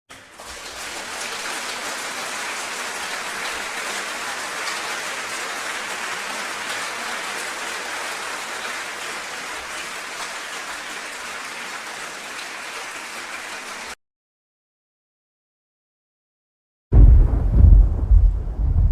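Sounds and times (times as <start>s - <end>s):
crowd applauding: 0.1s - 14.0s.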